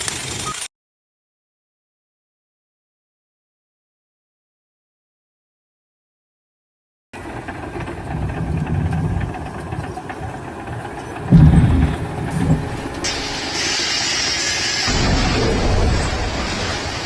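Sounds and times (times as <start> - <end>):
heavy engine rumbling: 7.2 - 17.0
steady hiss: 12.3 - 17.0.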